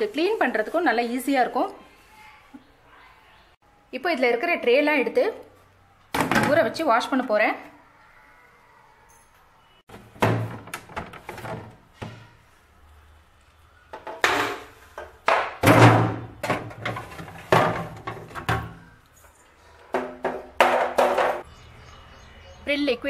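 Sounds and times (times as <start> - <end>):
plastic trays knocking and rattling: 10.0 - 12.2, 15.3 - 18.8, 19.9 - 21.4.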